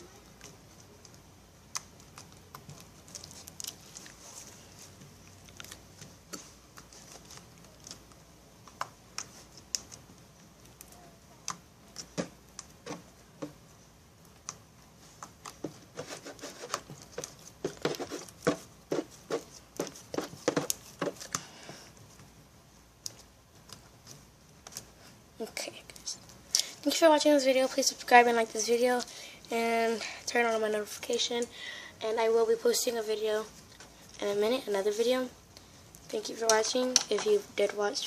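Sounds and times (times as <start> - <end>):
slime squishing by hand: 0.0 - 22.4.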